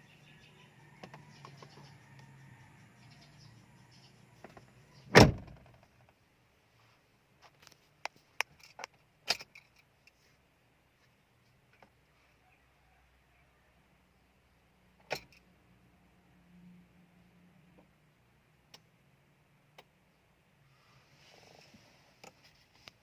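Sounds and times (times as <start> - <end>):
car door shutting: 4.4 - 5.7.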